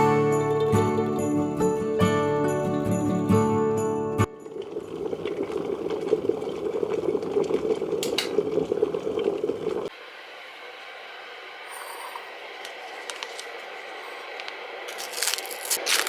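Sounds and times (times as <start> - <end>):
water bubbling with crackling: 4.4 - 9.9.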